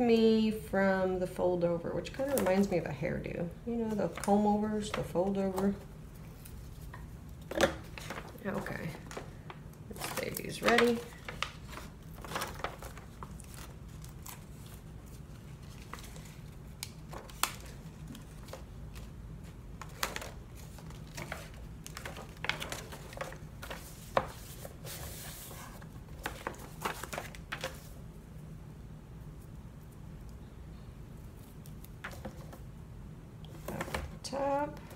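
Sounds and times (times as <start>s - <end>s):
paper envelopes rustling: 2.1s - 3.0s, 3.8s - 28.0s, 33.5s - 34.9s.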